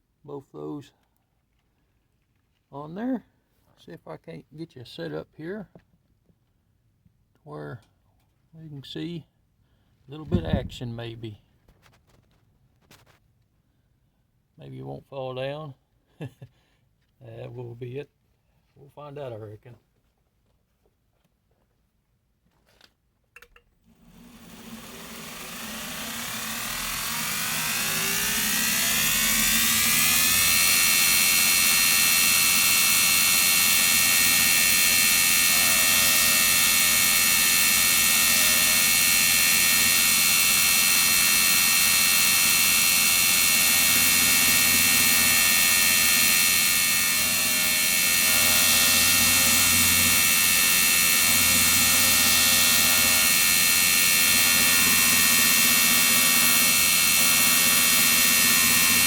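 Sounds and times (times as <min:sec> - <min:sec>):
belt grinder grinding steel: 0:24.0 - 0:59.0.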